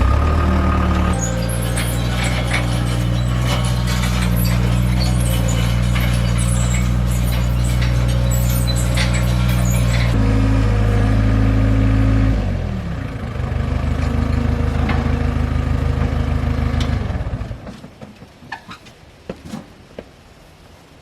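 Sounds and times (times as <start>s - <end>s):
diesel engine at high revs: 0.0s - 4.3s, 6.8s - 17.7s.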